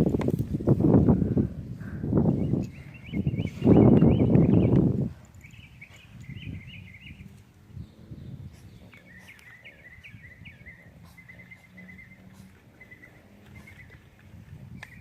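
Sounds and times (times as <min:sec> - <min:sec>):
small bird chirping: 0:02.4 - 0:14.1.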